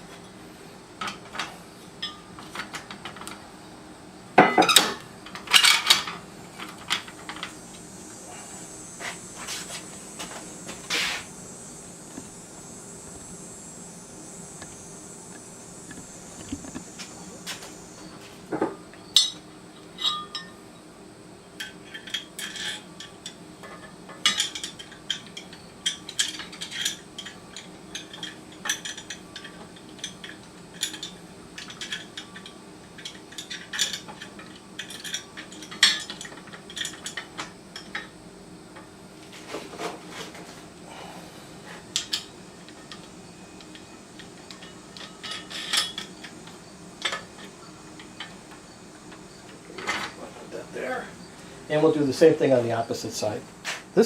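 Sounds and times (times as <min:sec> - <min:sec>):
faint steady hum: 0:00.0 - 0:54.0
metal hardware clinking: 0:01.0 - 0:03.4, 0:20.0 - 0:20.6, 0:41.9 - 0:48.4.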